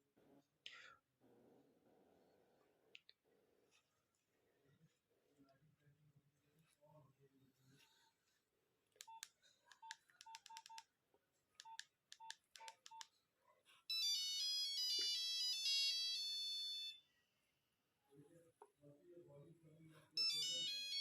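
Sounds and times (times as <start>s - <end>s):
phone keypad clicks with beeps: 9.0s - 10.8s
monophonic ringtone melody: 13.9s - 17.0s, 20.2s - 21.0s.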